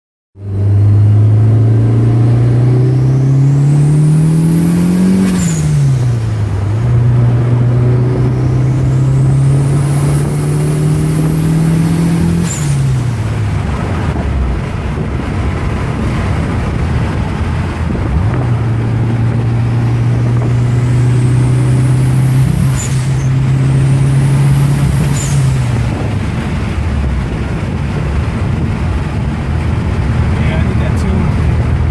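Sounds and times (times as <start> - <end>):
car engine pulling hard: 0.4 - 31.9.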